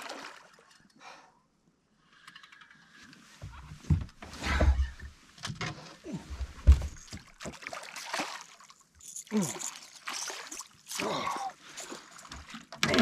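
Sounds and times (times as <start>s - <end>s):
water splashing against boat: 6.1s - 13.0s.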